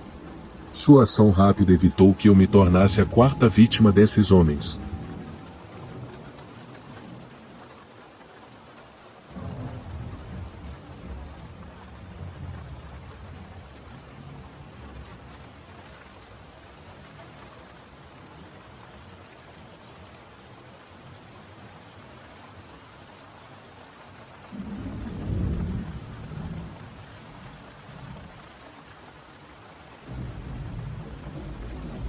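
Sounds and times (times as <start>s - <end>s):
thunder rumbling: 0.0s - 7.6s, 9.3s - 13.4s, 24.5s - 28.5s, 30.1s - 32.0s
steady rain: 0.0s - 32.0s.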